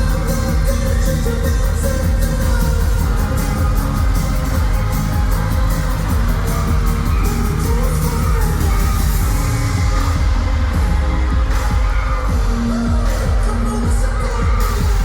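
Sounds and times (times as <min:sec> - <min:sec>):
live pop song over loudspeakers: 0:00.0 - 0:15.0.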